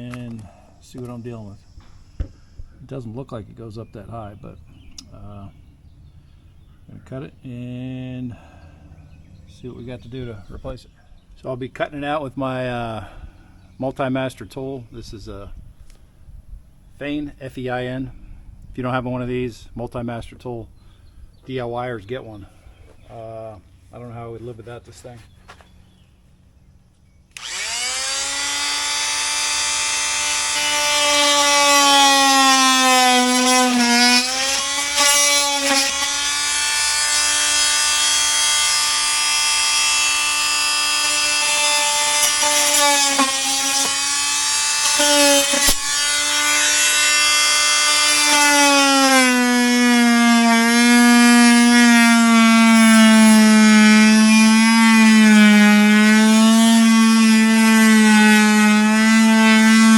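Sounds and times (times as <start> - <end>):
oscillating multi-tool cutting wood: 27.3 - 59.9.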